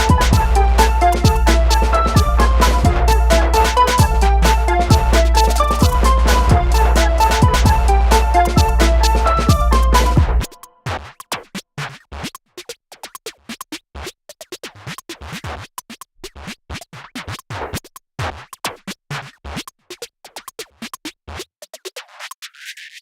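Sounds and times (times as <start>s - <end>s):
music with choppy beat: 0.0s - 15.5s.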